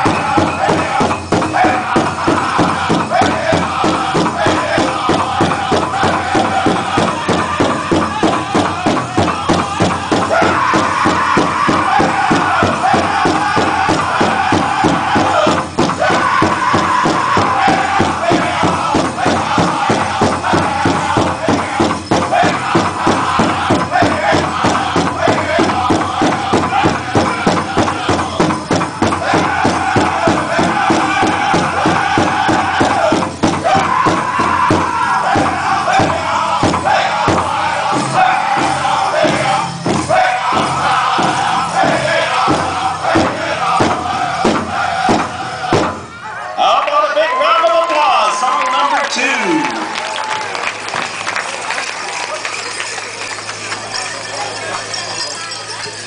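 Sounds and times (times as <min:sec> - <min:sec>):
big drum beating fast: 0:00.0 - 0:46.2
group singing in high voices: 0:00.0 - 0:46.4.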